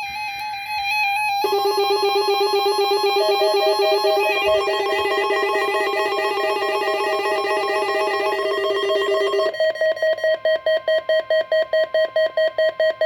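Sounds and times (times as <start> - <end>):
steady high electronic tone: 1.4 - 9.8
arpeggio-like electronic beeps: 1.4 - 10.2
beeping tone: 1.4 - 10.5.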